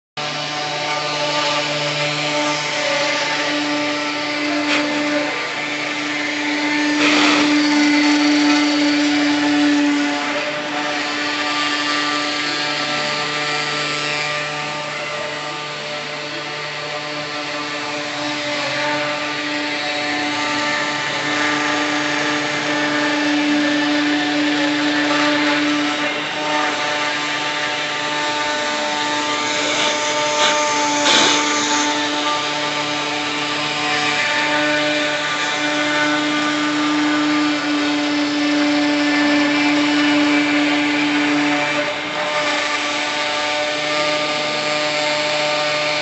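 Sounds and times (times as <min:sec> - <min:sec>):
stepper motors whining: 0:00.2 - 0:37.1.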